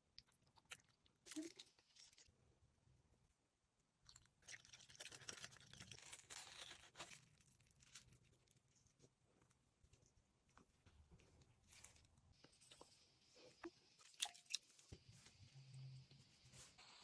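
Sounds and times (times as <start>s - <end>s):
crackling and rustling handling: 4.2s - 15.5s.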